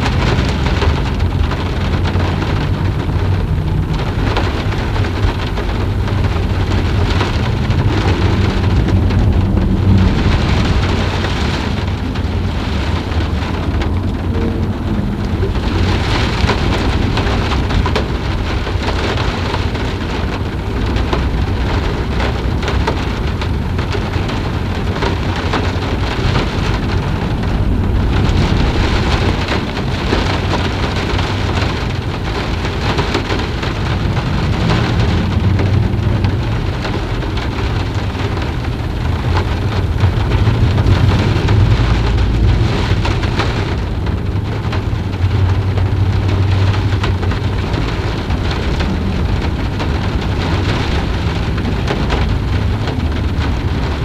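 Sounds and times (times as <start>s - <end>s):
distant thunder rumble: 0.0s - 54.0s
heavy rainfall: 0.0s - 54.0s.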